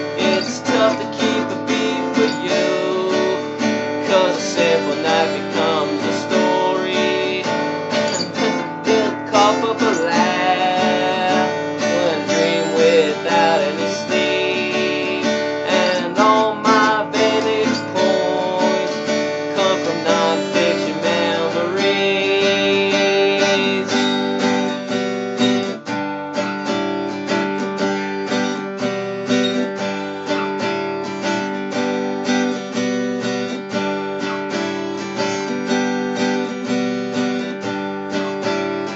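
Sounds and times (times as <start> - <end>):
acoustic guitar strumming chords: 0.0 - 38.9.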